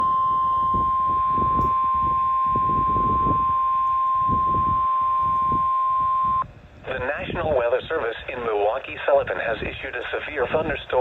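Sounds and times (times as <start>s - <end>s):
steady high alarm tone: 0.0s - 6.5s.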